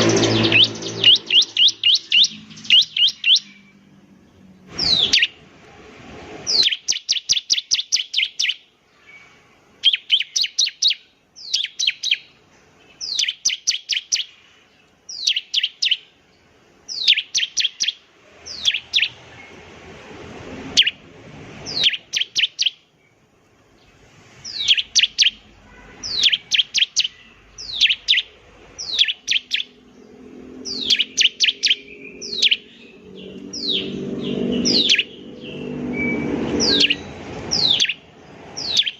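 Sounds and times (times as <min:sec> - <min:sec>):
bird singing high downward notes: 0:00.0 - 0:05.5, 0:06.4 - 0:19.7, 0:20.5 - 0:21.0, 0:21.6 - 0:38.9.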